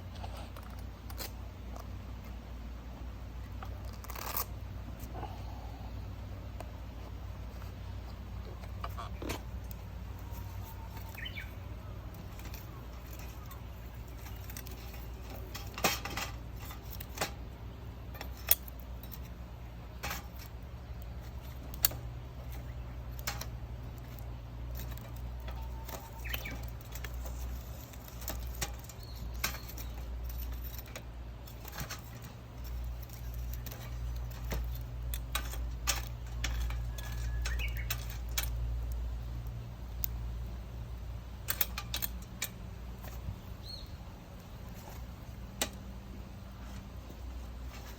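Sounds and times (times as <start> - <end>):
low fire rumble: 0.0 - 47.9
wood fire crackling and popping: 6.5 - 47.9.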